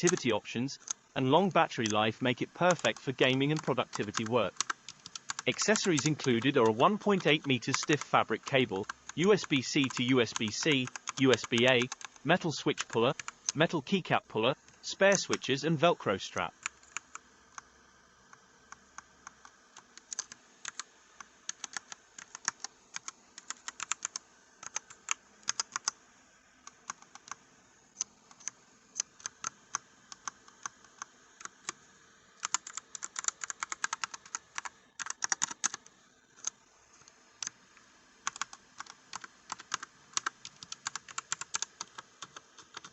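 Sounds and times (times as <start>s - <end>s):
mechanical keyboard key clacks: 32.4s - 35.8s.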